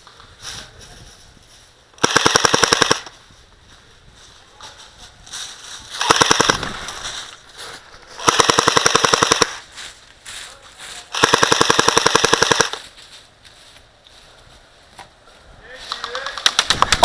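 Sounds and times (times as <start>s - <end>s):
airsoft gun firing bursts: 2.0s - 3.1s, 6.0s - 6.9s, 8.2s - 9.6s, 11.1s - 12.8s.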